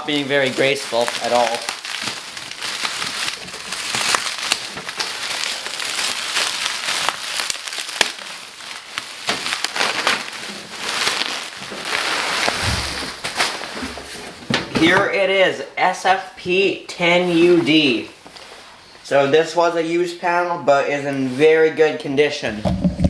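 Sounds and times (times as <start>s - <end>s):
bubble wrap crinkling and clicking: 0.0s - 15.0s
low thump: 12.6s - 13.2s.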